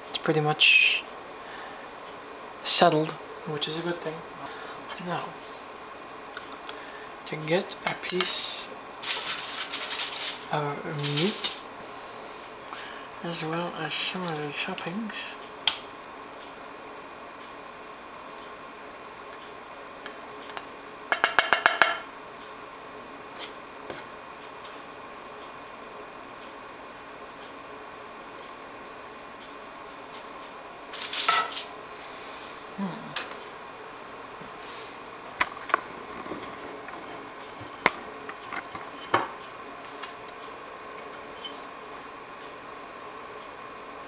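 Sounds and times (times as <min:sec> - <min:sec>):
utensils clinking on dishes: 0:31.0 - 0:31.7.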